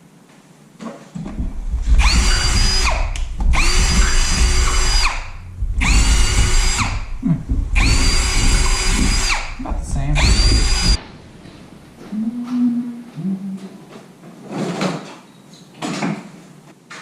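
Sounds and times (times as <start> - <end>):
electric drill whining: 1.3 - 11.0.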